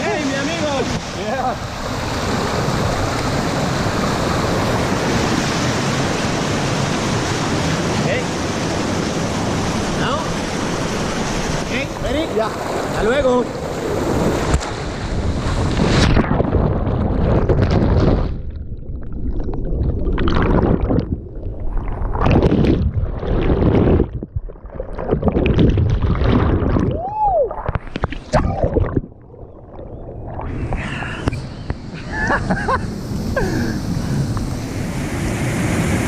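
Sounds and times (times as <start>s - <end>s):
waterfall rushing and splashing: 0.0s - 13.9s
wind buffeting microphone: 8.6s - 18.5s.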